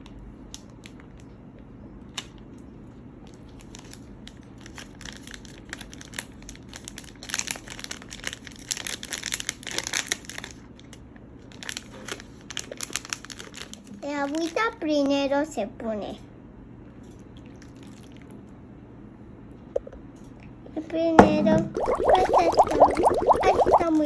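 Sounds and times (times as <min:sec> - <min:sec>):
packaging crinkling: 0:03.6 - 0:10.9, 0:11.5 - 0:14.6.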